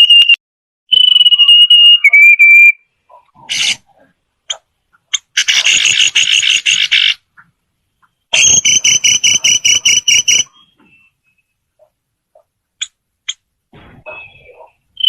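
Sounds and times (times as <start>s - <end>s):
bird chattering calls: 3.1s - 13.4s.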